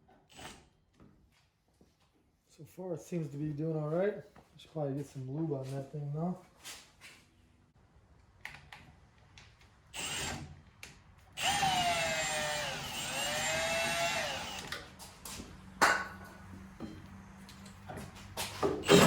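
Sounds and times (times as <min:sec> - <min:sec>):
drill motor whining: 0:10.0 - 0:10.4, 0:11.4 - 0:14.8.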